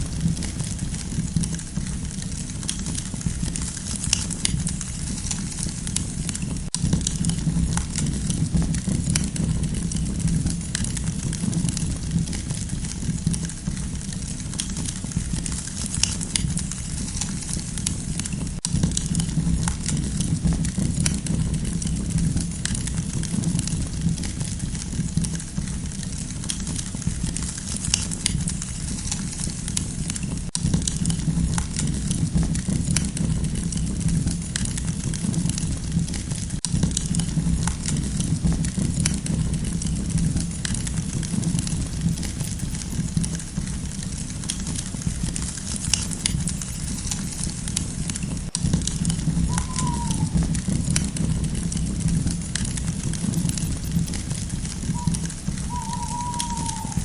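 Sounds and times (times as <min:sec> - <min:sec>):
campfire flames rushing: 0:00.0 - 0:03.7, 0:36.6 - 0:49.6
burning wood crackling and popping: 0:00.0 - 0:06.6, 0:36.6 - 0:49.6, 0:50.4 - 0:55.7.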